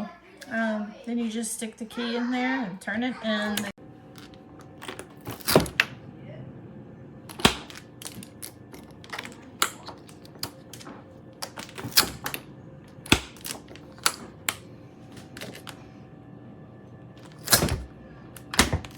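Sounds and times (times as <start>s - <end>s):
plastic lock clicks and knocks: 7.3s - 12.4s, 13.1s - 14.6s, 17.2s - 18.9s.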